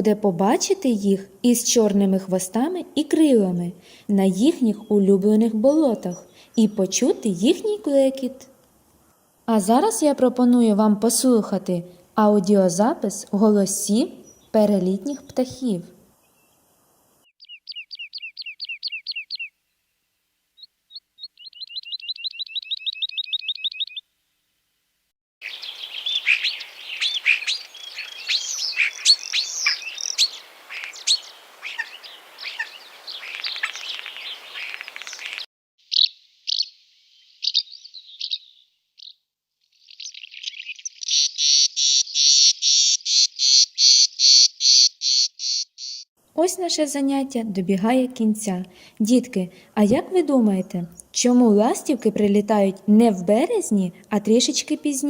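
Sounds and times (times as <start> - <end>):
birds singing and calling: 14.2 - 15.3, 17.4 - 19.5, 20.9 - 24.0, 25.4 - 39.2, 39.8 - 46.1.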